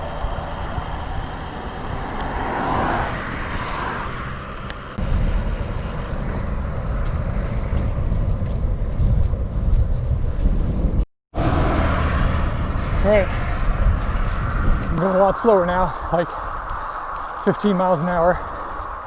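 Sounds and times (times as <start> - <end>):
traffic passing: 0.0 - 5.0, 11.4 - 19.0
bicycle wind and road noise: 0.0 - 19.0
low wind rumble on microphone: 0.0 - 19.0.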